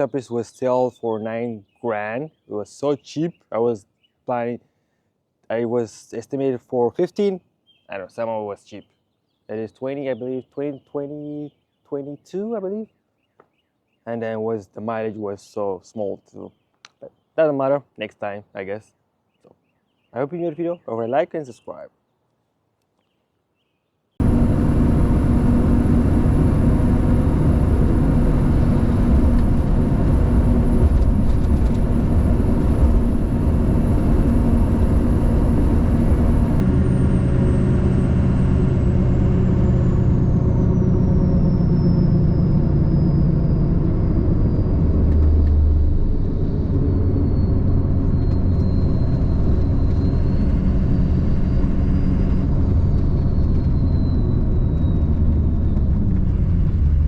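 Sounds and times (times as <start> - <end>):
faint high whine: 24.2 - 55.8
diesel truck engine and road noise: 24.2 - 57.0.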